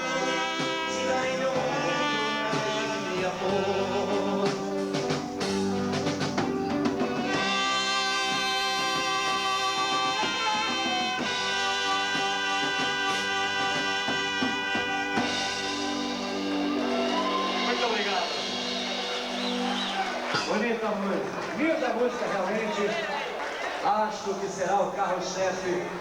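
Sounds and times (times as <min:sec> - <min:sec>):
person singing: 0:00.0 - 0:15.4
held instrumental chords: 0:00.0 - 0:22.1
drums: 0:00.0 - 0:26.0.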